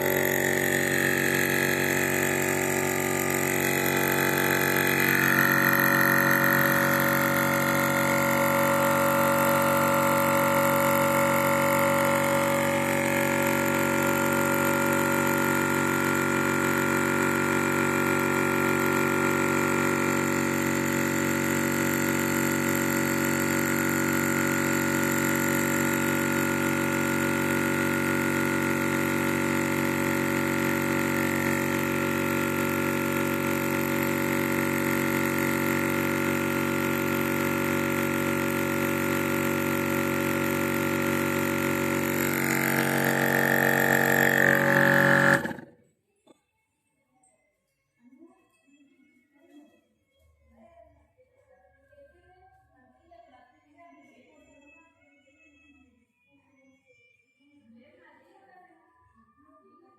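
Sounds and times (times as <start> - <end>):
air compressor humming: 0.0 - 45.8.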